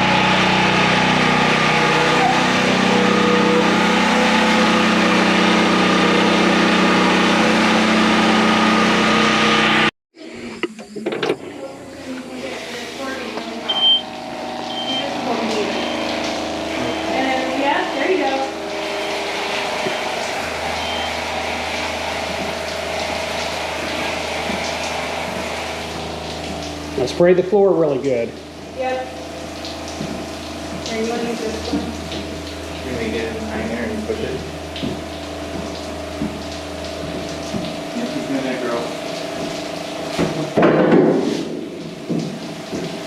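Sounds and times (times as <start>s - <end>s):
small engine running steadily: 0.0s - 9.9s
sprayer pump humming: 0.0s - 9.9s, 10.5s - 43.0s
water spraying hiss: 11.6s - 13.7s, 14.9s - 43.0s.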